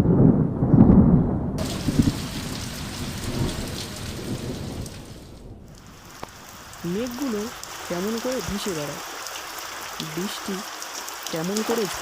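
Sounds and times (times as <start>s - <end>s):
thunder rumbling: 0.0s - 9.0s
steady rain hiss: 1.6s - 12.0s.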